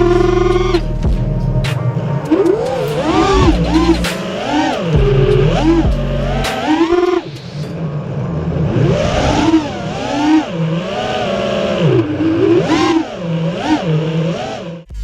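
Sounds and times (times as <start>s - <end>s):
radio-controlled car motor revving: 8.8s - 14.9s.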